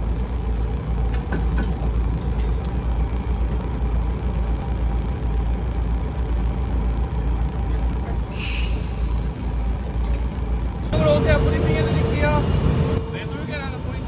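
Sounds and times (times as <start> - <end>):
boat engine rumbling: 6.9 - 14.0
air hiss: 8.3 - 9.5.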